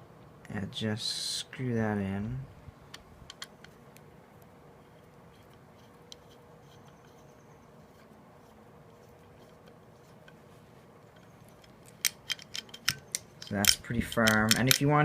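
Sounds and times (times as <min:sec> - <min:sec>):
faint steady hum: 0:00.0 - 0:15.0
screwdriver clicks: 0:11.2 - 0:15.0.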